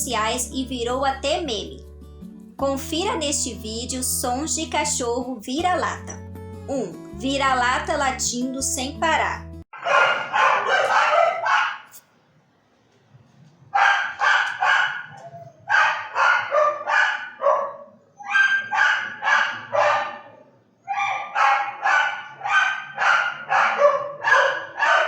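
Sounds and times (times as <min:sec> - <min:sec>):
dog barking: 0:09.7 - 0:12.0, 0:13.7 - 0:25.0.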